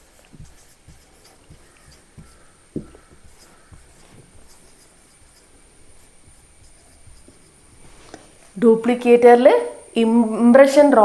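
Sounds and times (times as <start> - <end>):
quiet writing: 0.0 - 8.6
soft knocks: 0.3 - 4.7.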